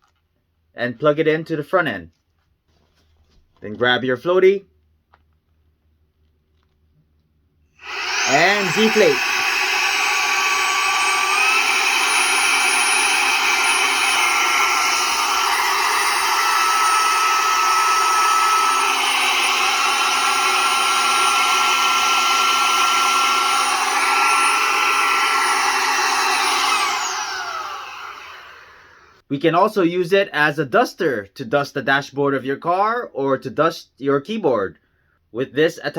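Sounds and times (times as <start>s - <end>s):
handheld vacuum motor whining: 7.8s - 29.2s.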